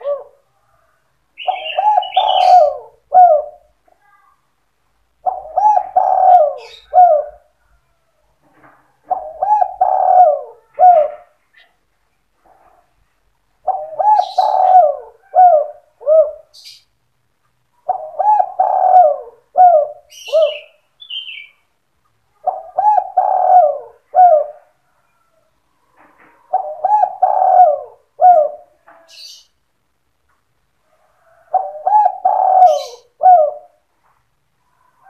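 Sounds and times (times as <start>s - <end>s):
dove cooing: 0.0s - 3.8s, 5.2s - 7.8s, 9.0s - 11.7s, 13.6s - 16.8s, 17.8s - 21.5s, 22.3s - 25.4s, 26.0s - 29.4s, 30.9s - 33.9s
faint high bird chirps: 0.0s - 4.4s, 5.3s - 8.3s, 19.9s - 23.6s.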